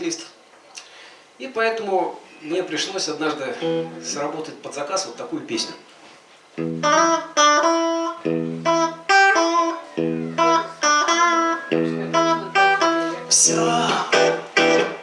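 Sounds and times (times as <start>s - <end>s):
guitar playing: 3.5s - 4.4s, 6.5s - 15.0s.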